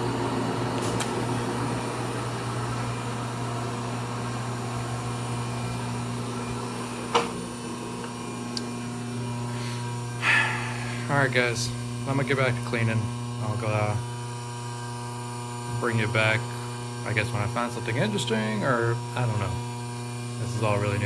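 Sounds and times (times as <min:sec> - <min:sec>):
electric motor hum: 0:00.0 - 0:21.0.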